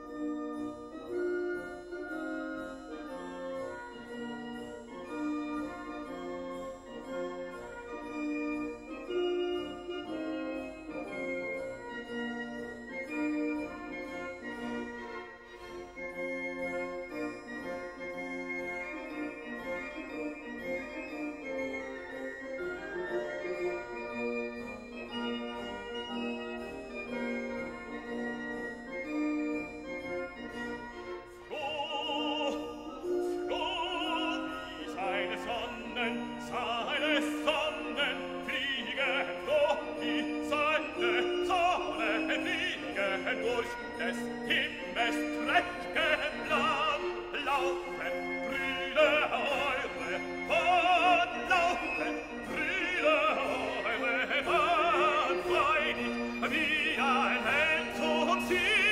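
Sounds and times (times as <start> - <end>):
classical music accompaniment: 0.0 - 58.9
operatic voice singing with vibrato: 31.4 - 58.9.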